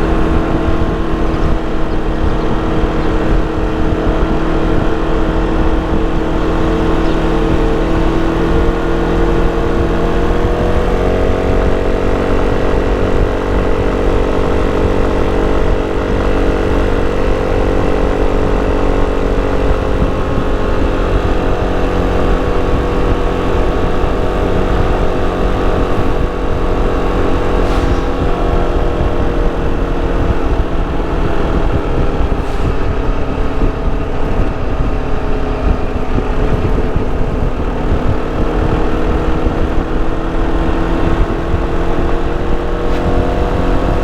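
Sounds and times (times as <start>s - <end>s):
low rumble: 0.0s - 44.0s
scooter engine while riding: 0.0s - 44.0s.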